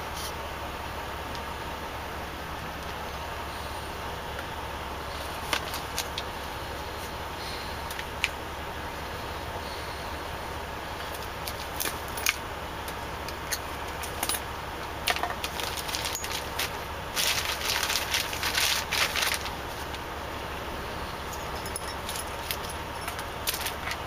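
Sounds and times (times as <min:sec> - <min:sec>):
steady low hum: 0:00.0 - 0:24.0
rustling: 0:15.2 - 0:20.1.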